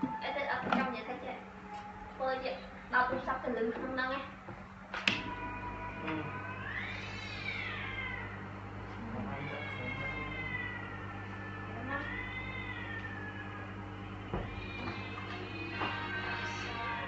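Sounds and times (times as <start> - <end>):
steady low hum: 0.0 - 17.0
cat meowing: 5.1 - 8.4, 9.3 - 13.6, 14.4 - 17.0.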